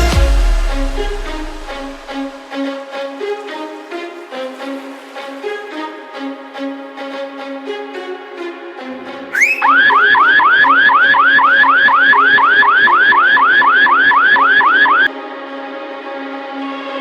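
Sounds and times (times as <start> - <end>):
background music: 0.0 - 14.1, 14.7 - 17.0
alarm siren whooping: 9.4 - 15.1.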